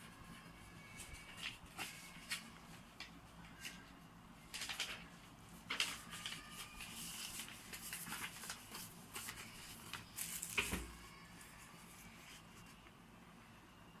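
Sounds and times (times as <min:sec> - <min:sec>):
rustling of handled objects: 0:05.6 - 0:12.8.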